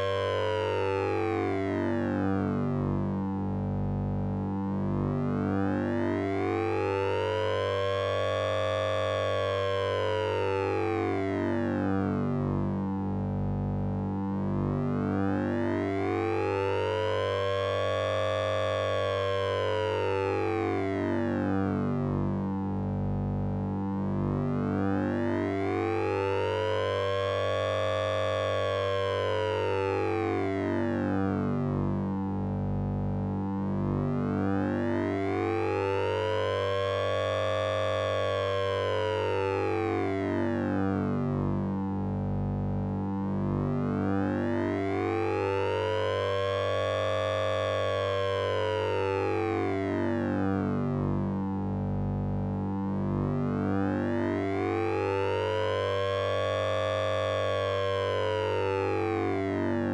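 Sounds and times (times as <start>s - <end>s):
steady low synth drone: 40.5s - 59.9s.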